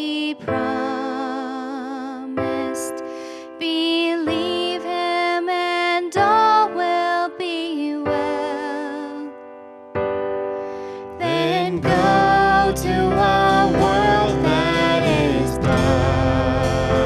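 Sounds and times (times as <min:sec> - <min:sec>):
keyboard chords: 0:08.1 - 0:17.0
praise band playing: 0:11.2 - 0:17.0.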